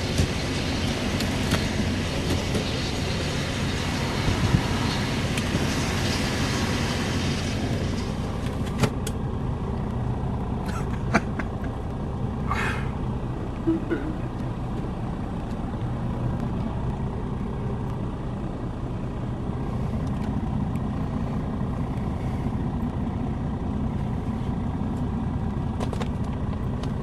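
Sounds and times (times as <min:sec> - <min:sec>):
wind rushing over microphone: 0:00.0 - 0:08.4.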